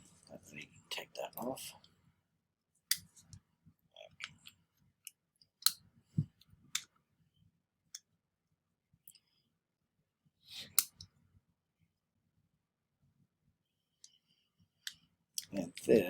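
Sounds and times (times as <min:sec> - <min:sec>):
metallic clicks of pistol parts: 0:02.9 - 0:03.4, 0:04.2 - 0:05.8.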